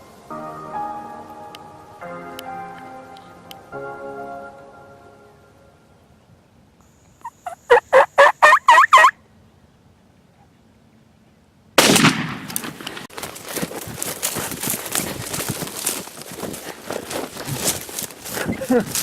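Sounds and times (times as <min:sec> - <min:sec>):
turkey gobbling: 0:07.2 - 0:09.2
shotgun blast: 0:11.8 - 0:13.1
rustling through brush: 0:12.4 - 0:19.0.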